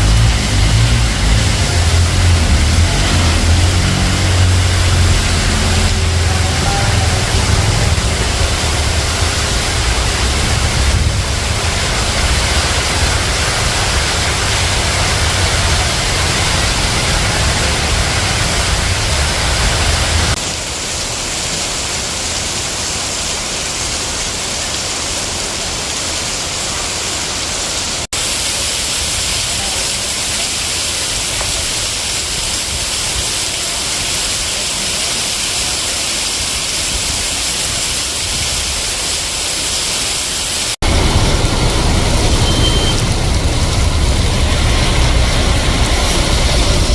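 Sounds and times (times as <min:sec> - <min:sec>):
deep rumble: 0:00.0 - 0:20.4, 0:40.8 - 0:46.9
heavy rain pouring: 0:00.0 - 0:46.9.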